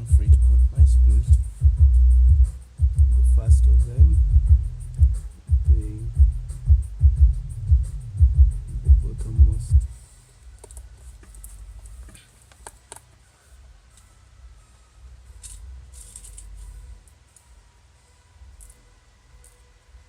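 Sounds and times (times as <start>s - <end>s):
bass-heavy music beat: 0.0s - 10.0s, 10.8s - 12.2s.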